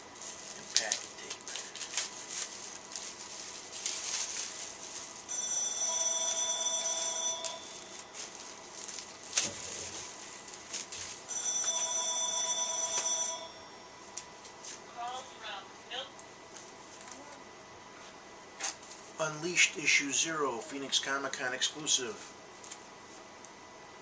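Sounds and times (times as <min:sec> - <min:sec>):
plastic wrap rustling: 0:00.0 - 0:05.4, 0:07.9 - 0:11.3
telephone ringing: 0:05.3 - 0:08.2, 0:11.3 - 0:14.2.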